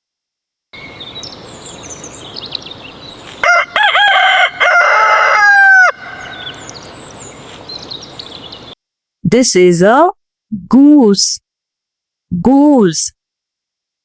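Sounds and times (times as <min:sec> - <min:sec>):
small birds chirping: 0:00.8 - 0:03.8, 0:05.9 - 0:08.8
rooster crowing: 0:03.4 - 0:06.8.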